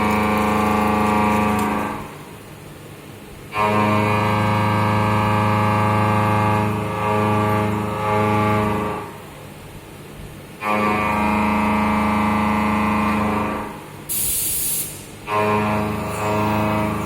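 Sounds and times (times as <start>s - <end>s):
metal-cutting machine humming: 15.3s - 17.0s.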